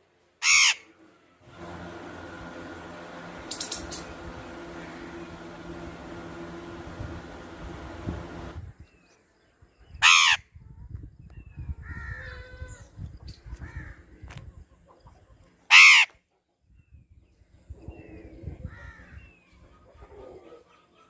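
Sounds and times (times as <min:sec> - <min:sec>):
parrot squawks: 0:00.4 - 0:00.9, 0:15.7 - 0:16.1.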